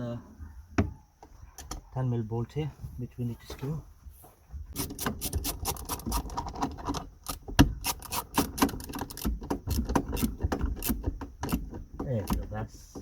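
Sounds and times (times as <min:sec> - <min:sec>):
ratchet clicking: 0:04.8 - 0:12.4.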